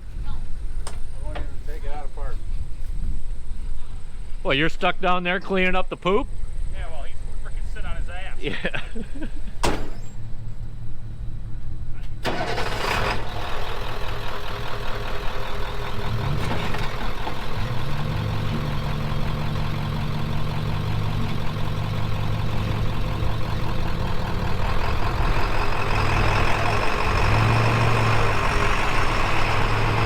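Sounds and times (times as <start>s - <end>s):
truck engine revving: 12.2s - 30.0s.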